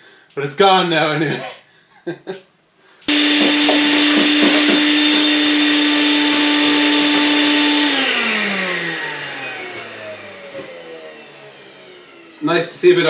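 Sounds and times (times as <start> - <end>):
vacuum cleaner running: 3.1 - 13.0.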